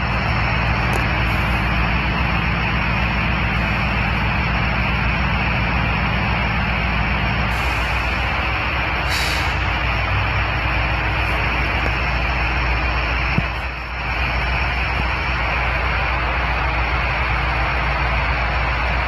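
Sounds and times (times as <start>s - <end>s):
diesel locomotive engine hum: 0.0s - 19.0s
air hisses: 9.0s - 9.7s.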